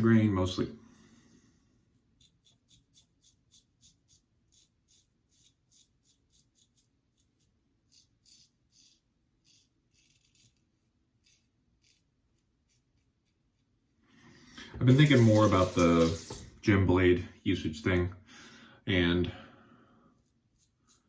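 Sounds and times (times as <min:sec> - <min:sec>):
razor scraping stubble: 0:02.2 - 0:13.6, 0:14.8 - 0:16.6, 0:20.2 - 0:21.0.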